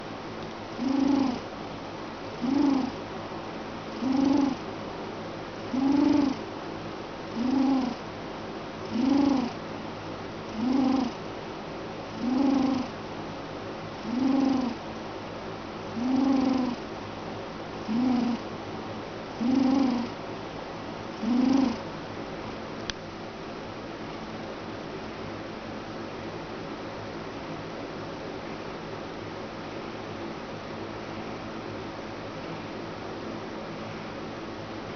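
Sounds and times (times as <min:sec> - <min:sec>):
faint steady hiss: 0:00.0 - 0:34.9
rhythmic snoring: 0:00.8 - 0:01.4, 0:02.4 - 0:03.0, 0:04.0 - 0:04.6, 0:05.7 - 0:06.4, 0:07.3 - 0:08.0, 0:08.9 - 0:09.6, 0:10.5 - 0:11.2, 0:12.1 - 0:13.0, 0:14.0 - 0:14.8, 0:16.0 - 0:16.8, 0:17.9 - 0:18.4, 0:19.4 - 0:20.2, 0:21.2 - 0:21.8.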